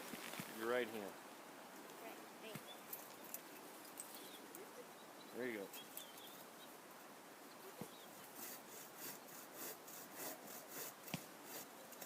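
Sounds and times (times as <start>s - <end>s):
hand saw cutting wood: 8.3s - 12.0s.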